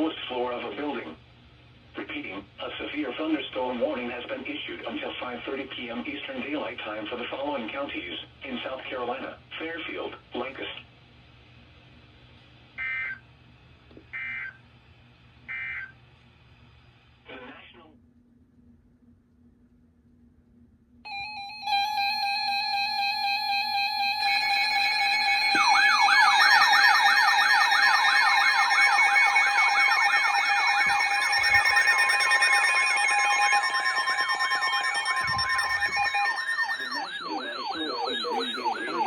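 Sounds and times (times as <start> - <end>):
electronic siren sweeping: 12.8 - 13.2, 14.2 - 14.6, 15.5 - 15.9, 21.1 - 39.0
steady electronic alert tones: 21.1 - 39.0.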